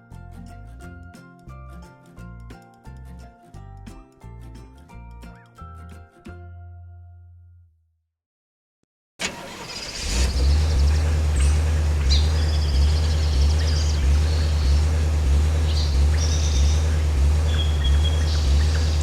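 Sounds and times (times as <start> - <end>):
pulsing car engine idle: 9.2 - 19.0
birds chirping: 9.8 - 19.0.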